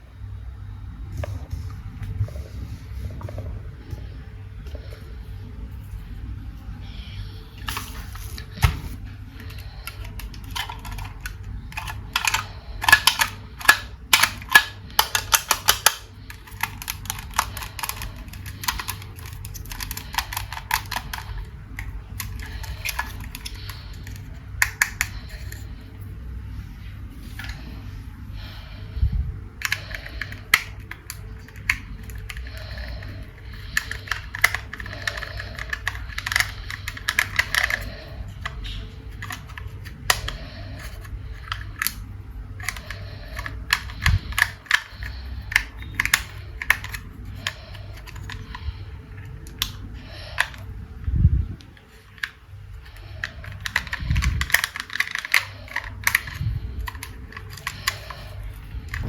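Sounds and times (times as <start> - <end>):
plastic toys clicking: 9.4 - 25.8, 29.6 - 50.7, 51.6 - 59.0.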